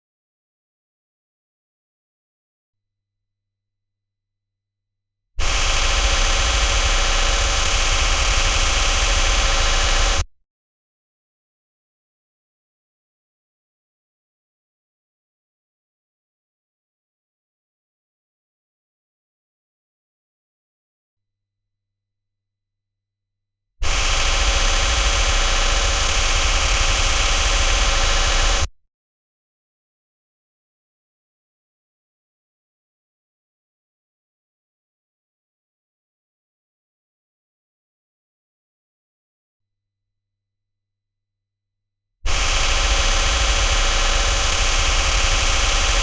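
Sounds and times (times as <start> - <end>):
harsh static hiss: 5.4 - 10.3, 23.8 - 28.7, 42.3 - 46.0.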